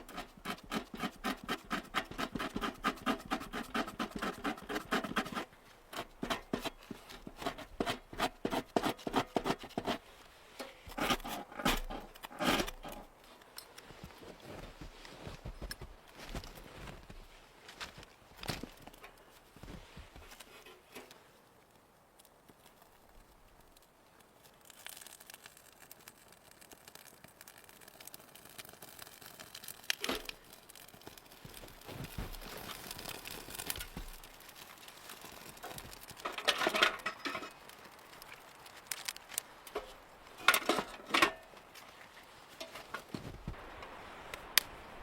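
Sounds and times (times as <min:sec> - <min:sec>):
rustling and crinkling handling: 0:09.4 - 0:21.4, 0:28.7 - 0:43.6.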